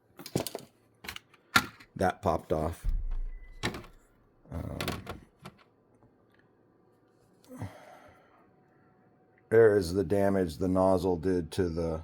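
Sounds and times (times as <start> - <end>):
rustling of parts: 0.1 - 2.0.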